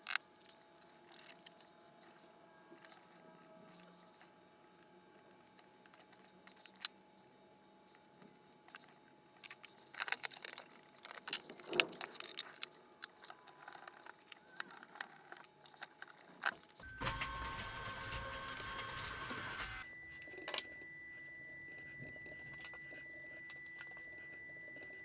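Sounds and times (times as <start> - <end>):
faint high whine: 0.0 - 25.0.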